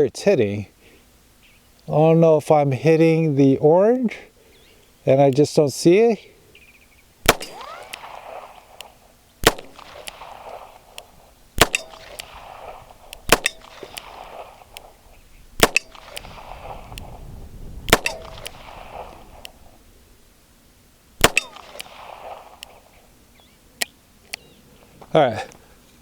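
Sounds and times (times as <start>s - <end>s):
revolver shots: 7.2s - 15.0s, 15.6s - 17.0s, 17.9s - 19.5s, 21.2s - 22.8s
faint sharp cracks: 7.2s - 17.2s, 17.9s - 19.7s, 21.2s - 23.0s.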